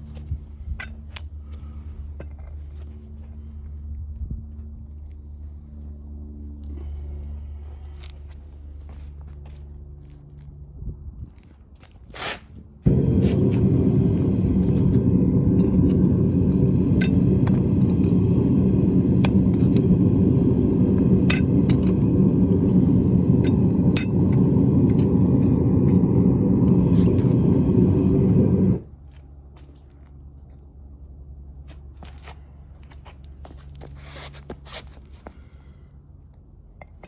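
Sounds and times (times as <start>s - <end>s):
loud low rumble: 12.8s - 28.9s.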